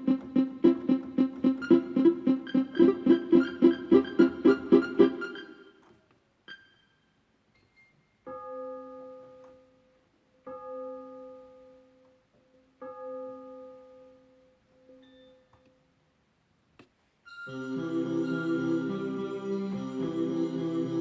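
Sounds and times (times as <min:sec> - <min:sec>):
electronic keyboard sustained note: 0:00.0 - 0:05.8, 0:17.4 - 0:21.0.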